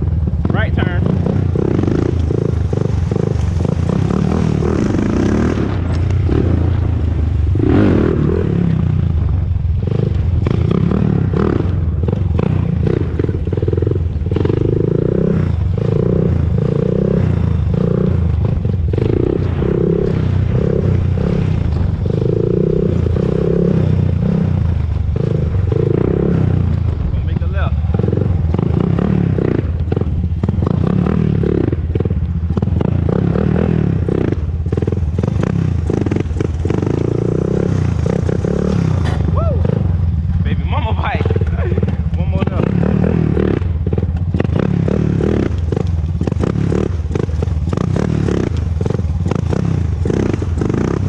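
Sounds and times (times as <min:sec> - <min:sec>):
quad bike engine running: 0:00.0 - 0:51.0.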